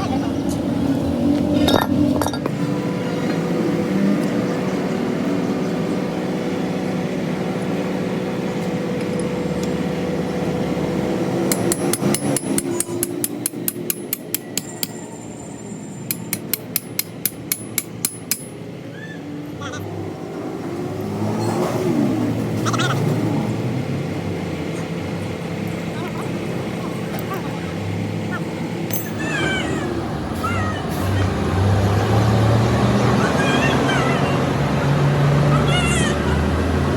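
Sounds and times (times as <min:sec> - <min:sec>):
steady mechanical hum: 0:00.0 - 0:36.9
rapid hammer blows on metal: 0:11.4 - 0:15.0, 0:16.0 - 0:18.6.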